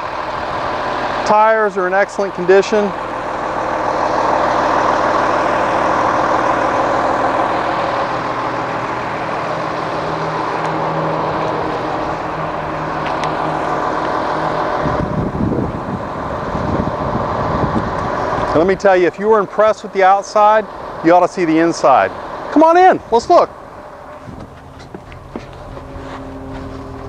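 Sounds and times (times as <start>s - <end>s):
diesel bus engine idling: 0.0s - 27.0s
wind buffeting microphone: 0.0s - 27.0s.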